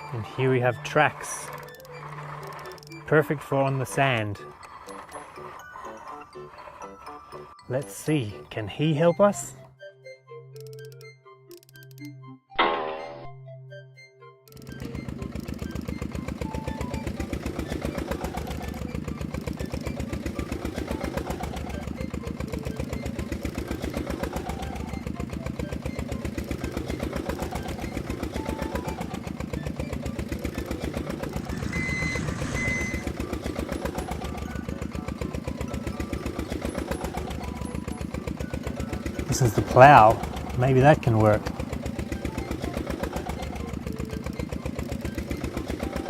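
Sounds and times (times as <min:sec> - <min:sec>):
bulldozer diesel engine chugging: 0:00.0 - 0:10.2, 0:14.5 - 0:46.0
short high beeps: 0:31.5 - 0:33.1.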